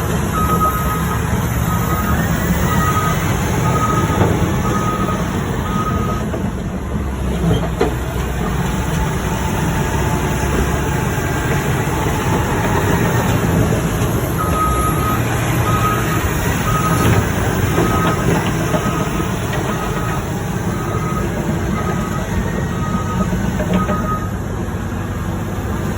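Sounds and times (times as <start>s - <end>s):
diesel engine running: 0.0s - 25.9s
backup alarm beeping: 0.3s - 6.4s, 14.3s - 24.4s.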